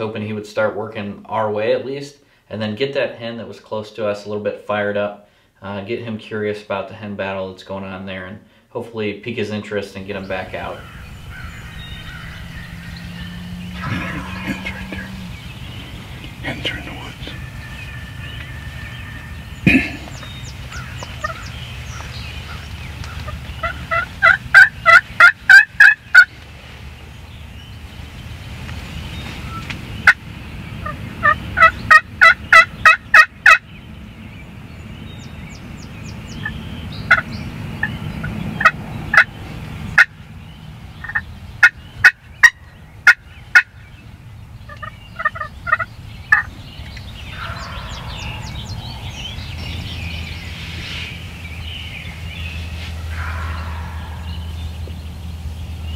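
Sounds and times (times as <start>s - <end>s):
turkey hen yelping: 10.6s - 26.3s, 30.8s - 33.6s, 37.1s - 39.3s, 44.7s - 46.5s, 47.3s - 49.0s, 52.8s - 54.8s.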